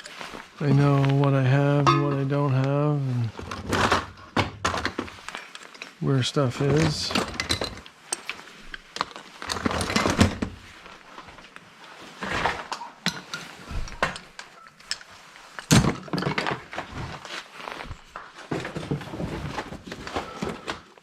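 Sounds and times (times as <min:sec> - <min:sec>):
hand tools clattering: 0:01.7 - 0:02.7, 0:04.7 - 0:10.4.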